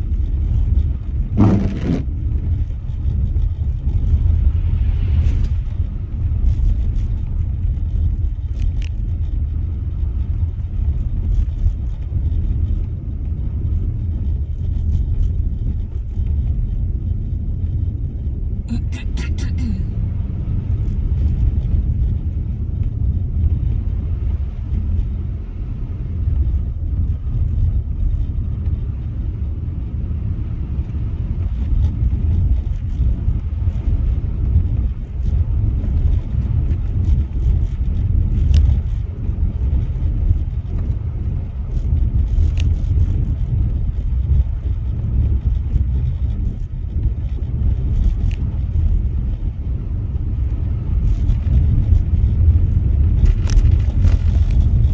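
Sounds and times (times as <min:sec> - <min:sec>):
car driving on snow: 0:00.0 - 0:54.9
faint ticks: 0:38.4 - 0:39.0.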